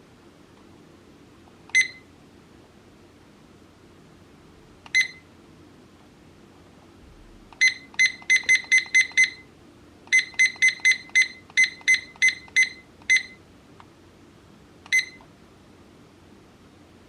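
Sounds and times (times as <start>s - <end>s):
clock buzzer short high beeps: 1.8s - 2.0s, 5.0s - 5.2s, 7.6s - 9.4s, 10.1s - 13.4s, 14.9s - 15.2s.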